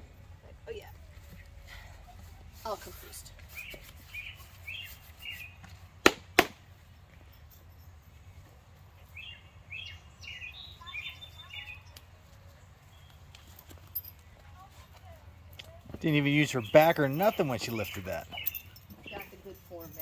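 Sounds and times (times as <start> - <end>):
small birds chirping: 1.2 - 5.8, 8.2 - 14.7, 15.4 - 20.0.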